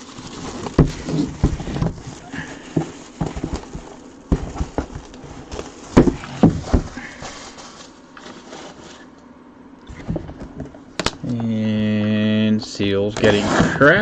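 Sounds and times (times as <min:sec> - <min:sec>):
plastic shrink-wrap crinkling: 0:00.0 - 0:09.2
box knocks and taps: 0:02.8 - 0:05.2.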